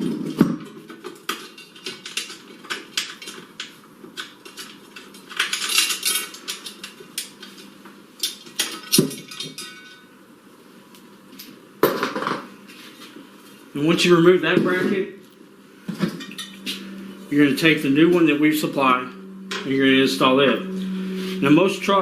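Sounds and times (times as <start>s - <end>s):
metal tools clinking: 4.2s - 7.6s, 8.2s - 10.1s, 16.1s - 18.7s.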